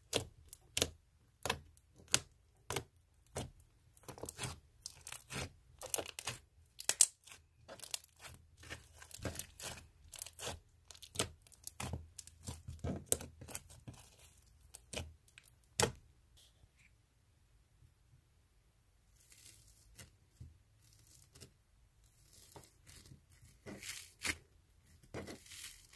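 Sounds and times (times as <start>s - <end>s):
slime crackling and popping: 0.1s - 15.9s.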